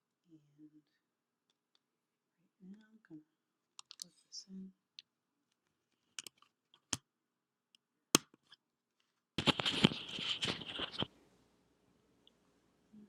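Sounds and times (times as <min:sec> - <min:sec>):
microphone handling rustling: 0:09.4 - 0:11.1.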